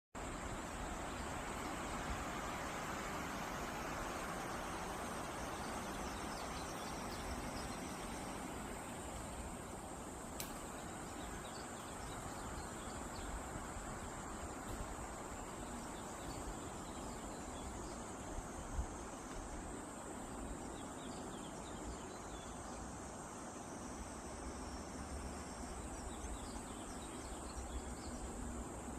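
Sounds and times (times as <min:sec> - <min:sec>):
insects chirping: 0:00.2 - 0:28.9
low outdoor background hum: 0:00.2 - 0:28.9
faint click: 0:10.4 - 0:10.8.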